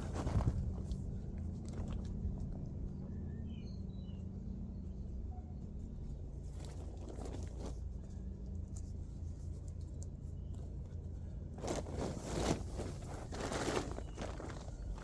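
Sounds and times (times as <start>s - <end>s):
tent fabric rustling: 11.6s - 15.0s.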